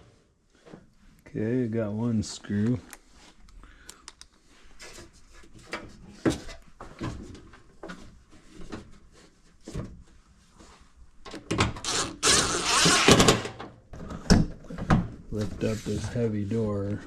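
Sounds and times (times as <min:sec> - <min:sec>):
loud scraping: 0:11.9 - 0:13.4.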